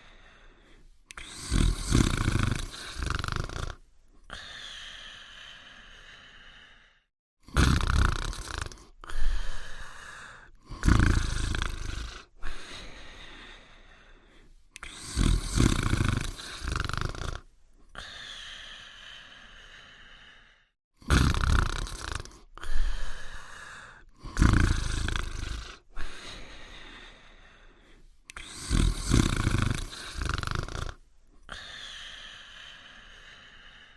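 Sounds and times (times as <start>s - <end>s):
quiet breathing: 0.0s - 7.1s, 8.6s - 20.8s, 21.9s - 33.9s
cartoon dog snoring: 1.1s - 4.6s, 7.4s - 12.9s, 14.8s - 18.3s, 21.0s - 26.4s, 28.3s - 31.8s.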